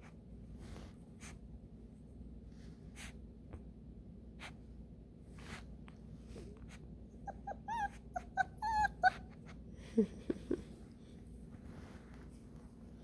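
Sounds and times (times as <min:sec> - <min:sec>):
puppy whining: 0:07.0 - 0:10.5.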